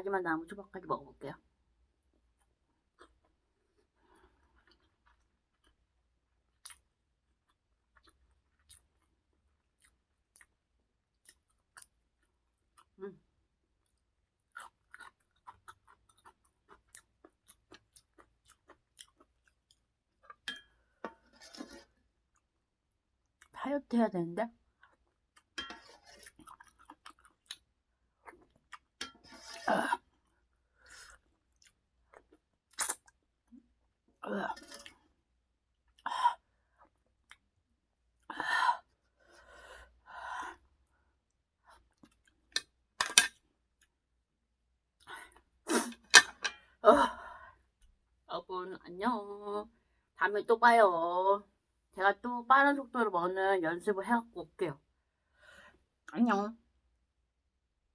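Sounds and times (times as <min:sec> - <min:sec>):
person chewing with wet clicks: 0:02.4 - 0:03.4, 0:06.5 - 0:13.0, 0:13.8 - 0:20.5, 0:26.2 - 0:29.0, 0:30.9 - 0:33.2.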